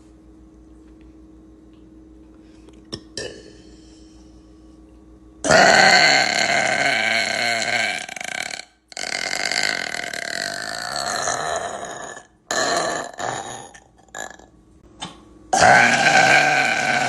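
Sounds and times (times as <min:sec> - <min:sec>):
woman burping: 0:05.4 - 0:14.5.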